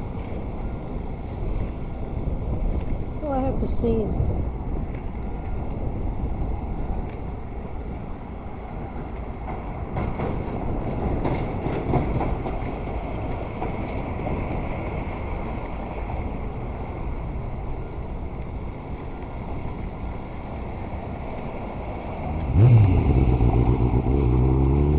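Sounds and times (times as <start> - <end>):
passing road vehicles rumble: 16.2 - 24.9.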